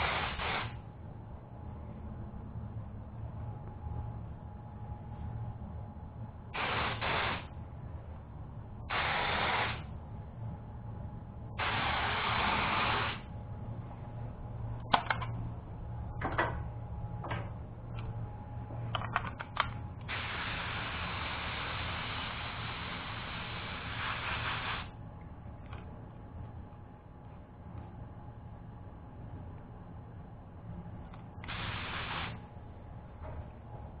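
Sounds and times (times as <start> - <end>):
paint spray gun hissing: 0.0 - 0.8, 6.6 - 7.5, 8.9 - 9.8, 11.6 - 13.2, 20.1 - 24.9, 31.5 - 32.4.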